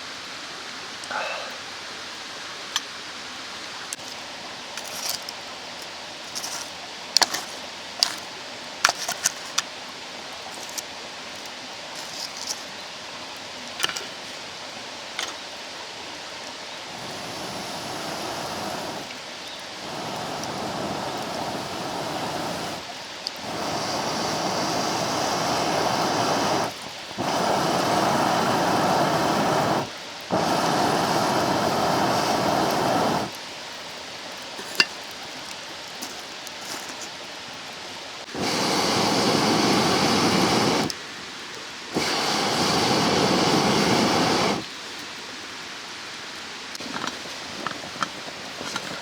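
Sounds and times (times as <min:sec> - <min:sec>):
rushing mountain stream: 0:12.8 - 0:49.0.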